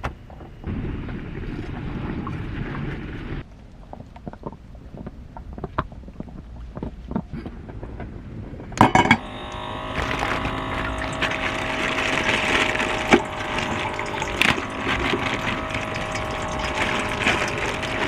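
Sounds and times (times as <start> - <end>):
small motor running with hiss: 9.2 - 18.0.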